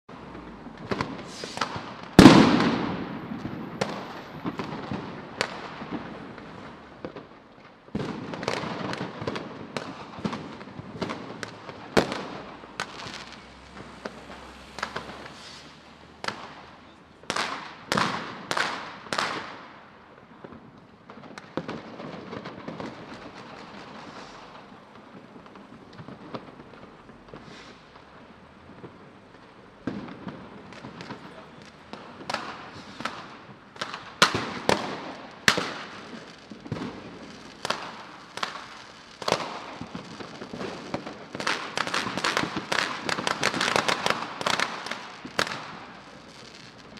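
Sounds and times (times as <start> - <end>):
gunshot cracks: 1.3 - 4.6
loud gunshots: 2.2 - 3.4.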